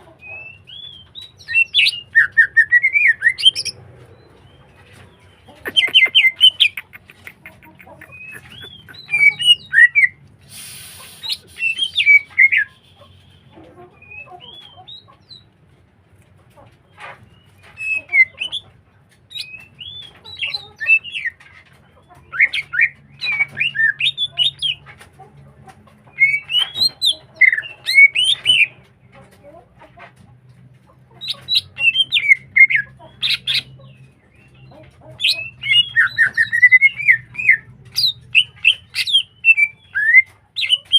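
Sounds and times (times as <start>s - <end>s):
bird singing chirps and whistles: 11.1s - 13.4s, 22.3s - 24.8s, 26.1s - 28.7s, 35.2s - 40.9s.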